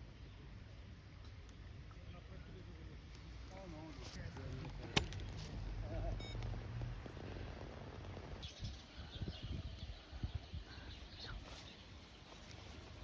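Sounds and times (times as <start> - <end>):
low steady rumble: 5.3 - 8.8
faint bird chirps: 8.4 - 12.8.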